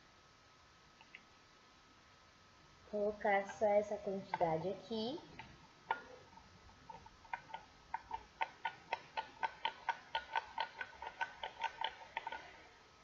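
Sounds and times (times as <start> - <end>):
spoon clicking against plastic container: 7.3 - 12.5.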